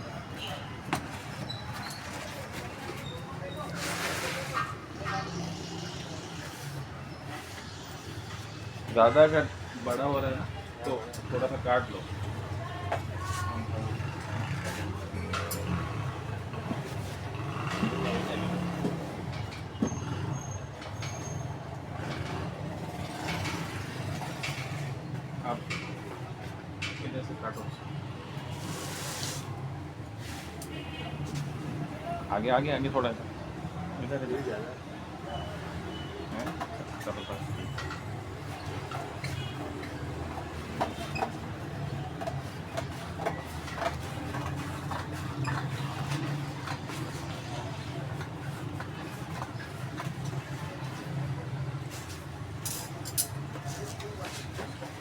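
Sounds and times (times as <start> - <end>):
packaging rustling and scraping: 3.6 - 4.8.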